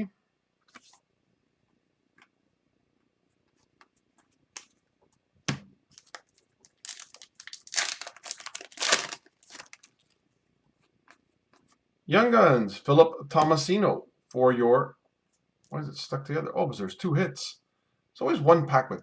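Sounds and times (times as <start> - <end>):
wrapper crinkling: 5.9 - 10.2
foil pack tearing: 6.0 - 10.0.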